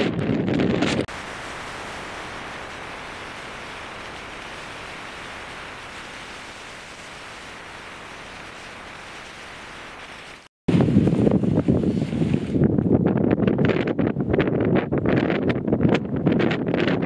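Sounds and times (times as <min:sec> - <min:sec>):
wind buffeting microphone: 0:00.0 - 0:17.0
steady hiss: 0:01.1 - 0:10.5.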